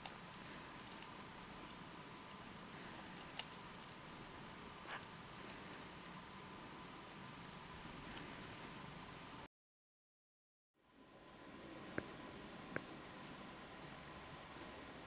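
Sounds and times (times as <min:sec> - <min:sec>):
songbirds calling: 0:02.5 - 0:09.5.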